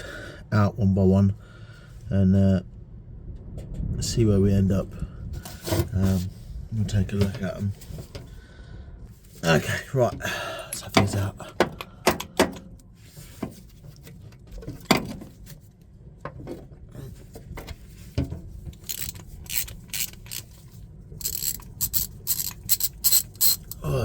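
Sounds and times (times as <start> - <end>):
ratchet wrench clicking: 18.8 - 20.6, 21.2 - 23.8
ratchet wrench knocks: 21.2 - 23.8.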